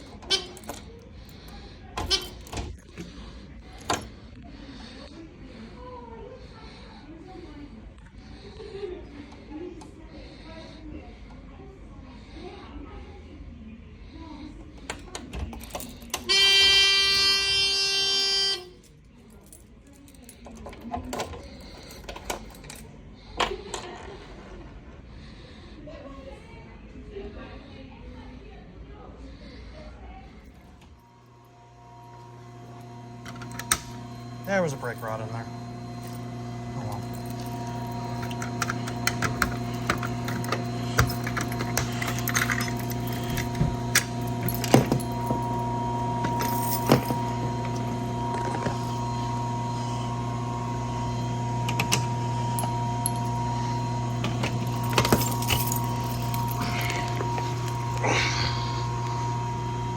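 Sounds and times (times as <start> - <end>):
fire alarm horn buzzing: 0.0 - 0.9, 2.0 - 2.7, 16.1 - 18.9
steady hum: 31.1 - 59.9
fire alarm pull station clicks: 33.2 - 34.0, 38.2 - 45.3, 51.6 - 52.1.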